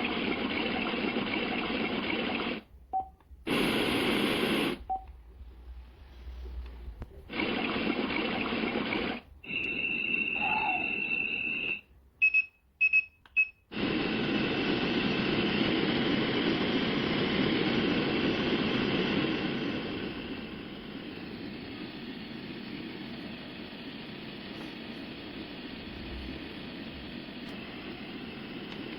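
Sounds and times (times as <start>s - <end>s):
white noise: 0.0s - 12.0s, 13.7s - 28.9s
alarm clock beeps: 9.5s - 13.6s.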